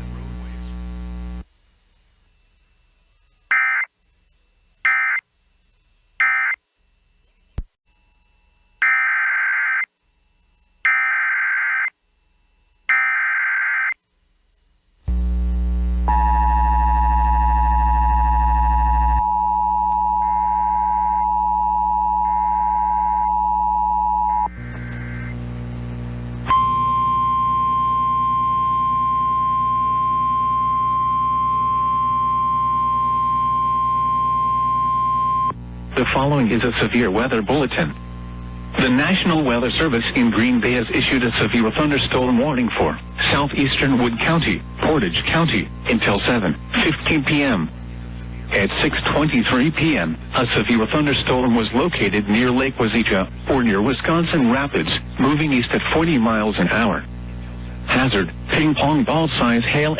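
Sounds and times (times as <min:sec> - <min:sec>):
steady single-pitch alarm tone: 0:02.5 - 0:05.3, 0:06.1 - 0:14.0, 0:16.1 - 0:24.5, 0:26.5 - 0:35.5
digital data bursts: 0:03.5 - 0:03.9, 0:04.8 - 0:05.2, 0:06.1 - 0:06.6
low hum: 0:14.7 - 0:55.7.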